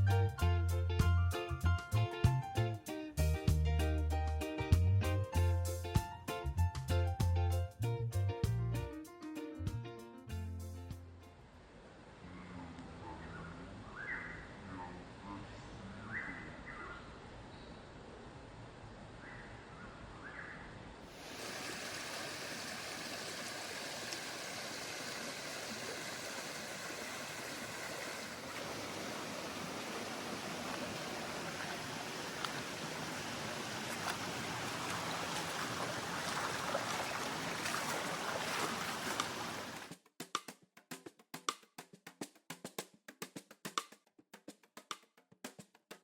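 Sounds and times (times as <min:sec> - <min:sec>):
rushing water: 0:21.1 - 0:39.9
percussive music with drum hits: 0:39.9 - 0:46.0.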